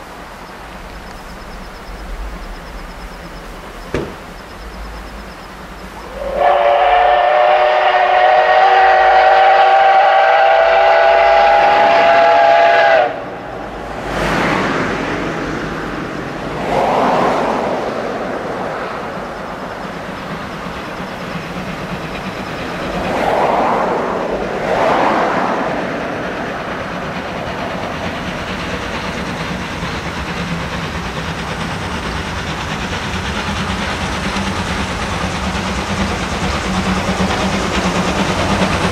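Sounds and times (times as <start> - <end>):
train rolling rumble: 0.0 - 38.9
steam locomotive whistle: 6.0 - 13.4.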